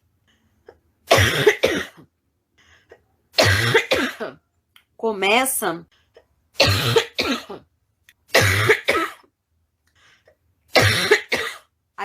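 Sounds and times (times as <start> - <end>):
woman coughing harshly: 1.1 - 2.1, 3.4 - 4.4, 6.6 - 7.7, 8.3 - 9.3, 10.7 - 11.7.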